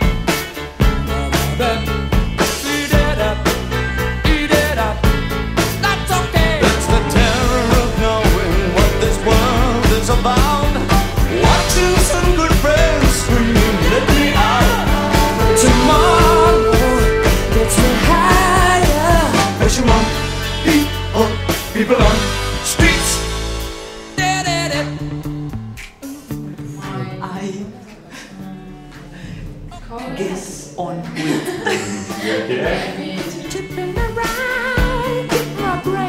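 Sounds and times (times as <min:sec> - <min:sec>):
steady drum beat: 0:00.0 - 0:26.7, 0:31.1 - 0:36.0
pop song: 0:00.0 - 0:36.0
person singing: 0:00.9 - 0:05.2, 0:05.8 - 0:23.4, 0:31.4 - 0:36.0.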